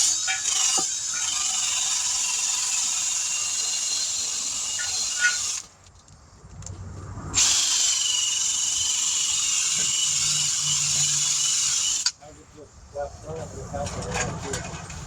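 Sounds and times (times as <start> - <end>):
power tool whining: 0.0 - 5.7, 7.4 - 12.1.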